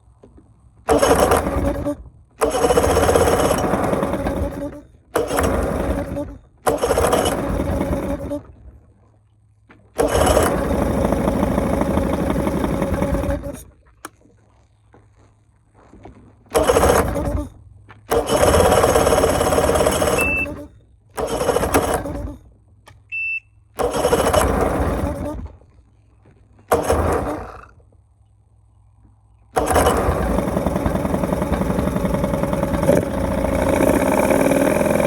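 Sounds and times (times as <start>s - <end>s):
outboard motor running: 0.3s - 22.7s, 23.7s - 28.1s, 29.5s - 35.0s
short high beep: 20.2s - 20.7s, 23.1s - 23.6s.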